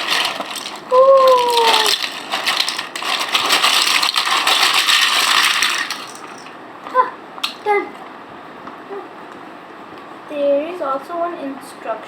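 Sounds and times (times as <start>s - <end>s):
plastic toy blocks clattering: 0.0s - 6.6s.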